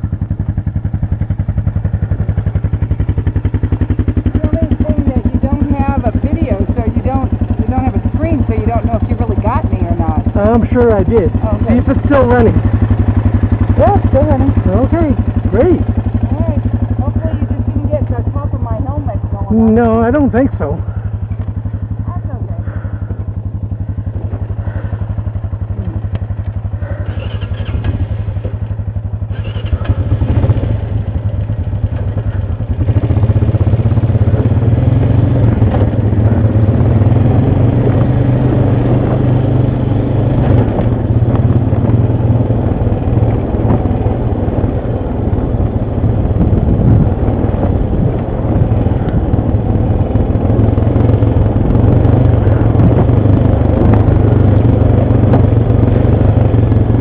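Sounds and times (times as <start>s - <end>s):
atv engine running: 0.0s - 57.0s
clatter: 25.6s - 34.6s, 35.4s - 39.2s.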